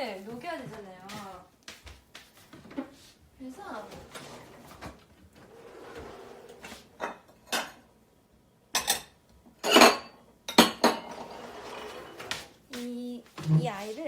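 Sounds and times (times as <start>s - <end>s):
dishes and utensils clattering: 5.5s - 7.8s, 8.8s - 12.5s.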